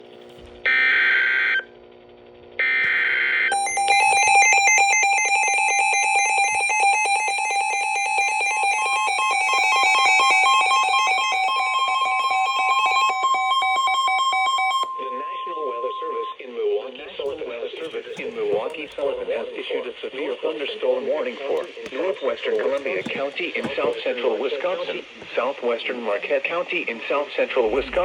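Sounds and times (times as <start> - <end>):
warbling electronic alarm tone: 2.6 - 16.0.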